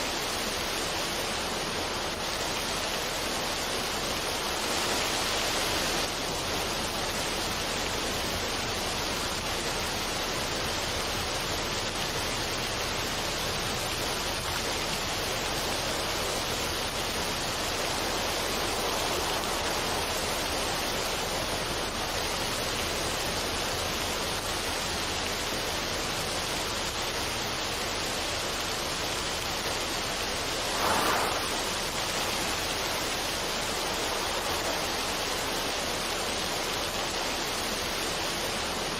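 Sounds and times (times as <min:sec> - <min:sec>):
waterfall rushing over rocks: 0:00.0 - 0:38.9
water splash: 0:30.2 - 0:37.2.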